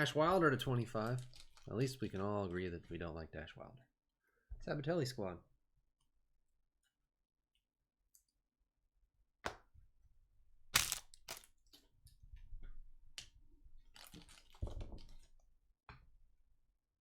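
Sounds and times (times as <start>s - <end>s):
card packs crinkling and clicking: 0.8s - 2.2s, 10.8s - 11.5s, 14.0s - 14.6s.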